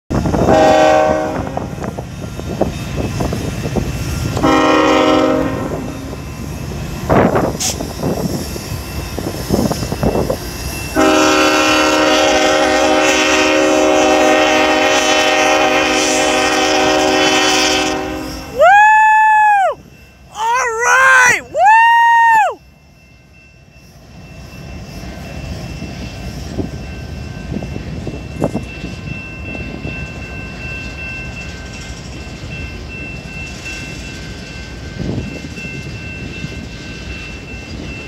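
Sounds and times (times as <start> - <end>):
locomotive air horn blasts: 0.4 - 1.9, 4.3 - 6.2, 10.9 - 18.6
train wheels clattering on rails: 1.5 - 17.3.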